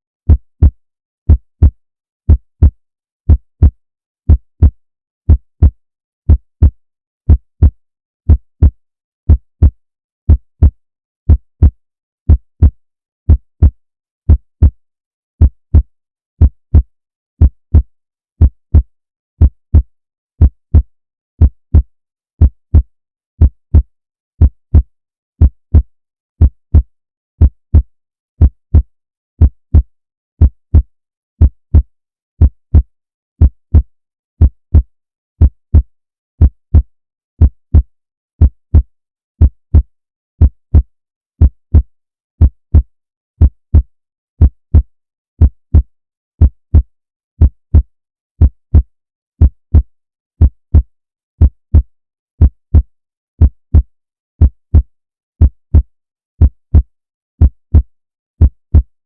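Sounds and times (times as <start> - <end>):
heartbeat lub-dub thumps: 0.3 - 14.8, 15.4 - 17.8, 18.4 - 22.8, 23.4 - 24.8, 25.4 - 25.8, 26.4 - 38.8, 39.4 - 40.8, 41.4 - 44.8, 45.4 - 45.8, 46.4 - 46.8, 47.4 - 49.8, 57.4 - 57.8.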